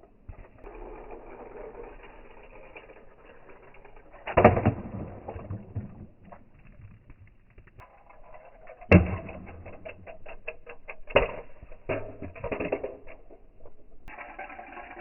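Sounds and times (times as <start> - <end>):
toy cars clattering on plastic track: 7.8 - 15.0.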